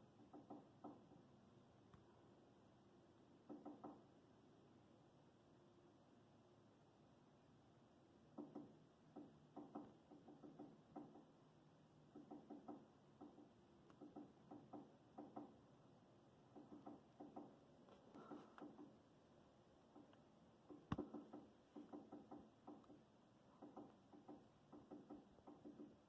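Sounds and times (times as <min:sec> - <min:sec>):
woodpecker tapping on wood: 0:00.1 - 0:01.3, 0:03.4 - 0:04.1, 0:08.3 - 0:11.4, 0:12.0 - 0:15.7, 0:16.4 - 0:19.0, 0:19.9 - 0:26.0.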